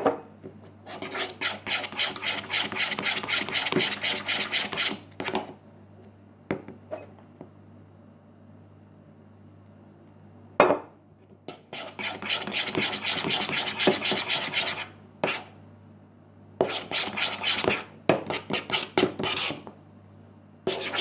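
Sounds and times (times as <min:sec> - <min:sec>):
utensil scraping container: 0:00.9 - 0:05.0, 0:20.7 - 0:21.0.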